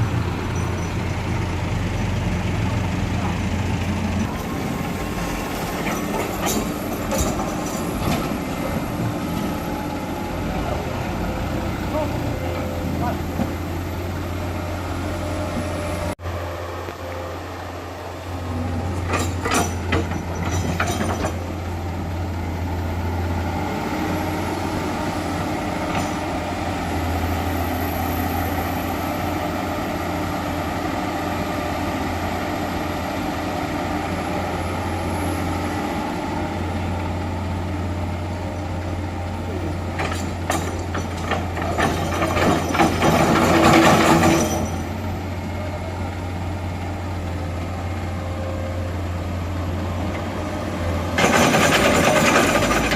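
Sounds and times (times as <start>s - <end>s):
diesel excavator engine droning: 0.0s - 52.9s
clanks and rattles: 5.3s - 9.6s, 18.9s - 21.6s, 25.9s - 26.4s, 39.9s - 45.1s, 51.1s - 52.9s.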